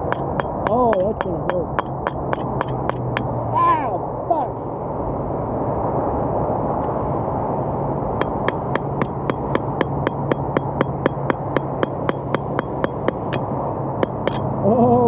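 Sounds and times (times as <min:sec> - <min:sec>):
metal-on-metal hammering: 0:00.0 - 0:03.3, 0:08.2 - 0:14.5
steady background noise: 0:00.0 - 0:15.0.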